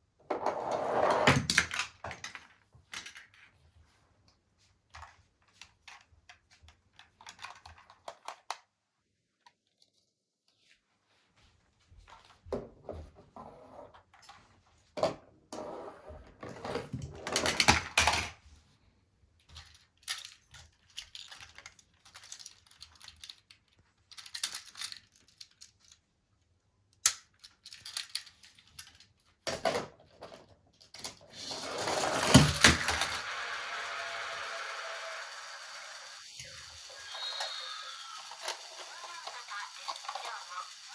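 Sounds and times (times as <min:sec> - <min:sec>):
plastic toy vehicles clicking and rattling: 0:01.3 - 0:03.6, 0:04.9 - 0:08.7, 0:17.1 - 0:18.4, 0:19.4 - 0:26.1, 0:26.8 - 0:40.9.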